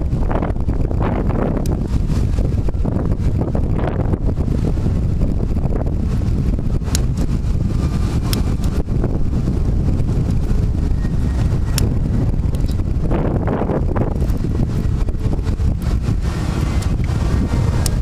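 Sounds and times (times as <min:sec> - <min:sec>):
wind buffeting microphone: 0:00.0 - 0:18.0
sharp clicks: 0:06.8 - 0:07.3, 0:11.6 - 0:12.8.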